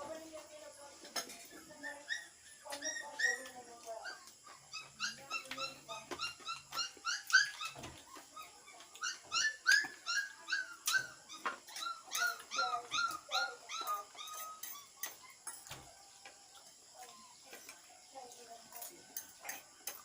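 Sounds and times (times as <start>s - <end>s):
dog whimpering: 1.7s - 16.4s.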